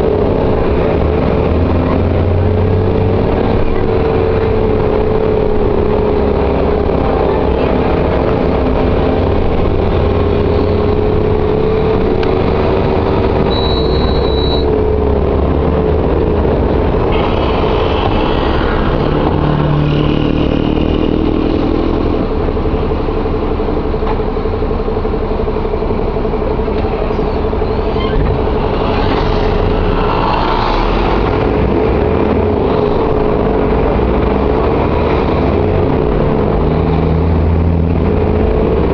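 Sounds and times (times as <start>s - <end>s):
bus diesel engine running: 0.0s - 38.9s
brief high tone: 13.5s - 14.7s.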